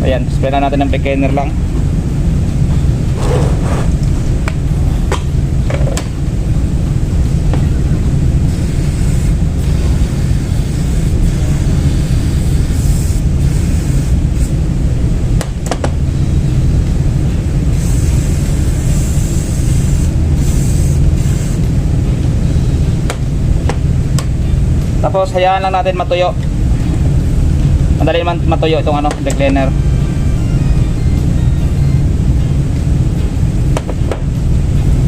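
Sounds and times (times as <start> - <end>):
low rumble: 1.4 - 8.4.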